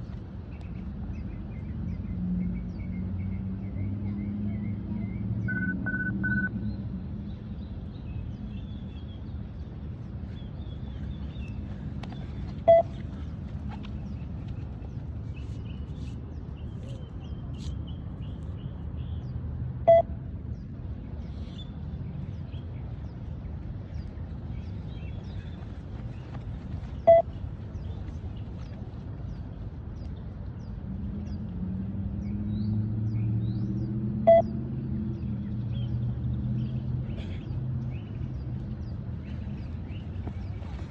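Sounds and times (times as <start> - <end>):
steady background noise: 0.0 - 40.9
short electronic beeps: 5.5 - 6.5, 12.7 - 13.0, 19.9 - 20.1, 27.1 - 27.3, 34.3 - 34.5.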